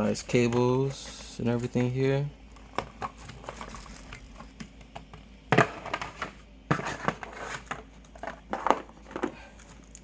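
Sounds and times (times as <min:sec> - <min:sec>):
plastic packaging rustling: 0:00.9 - 0:04.6.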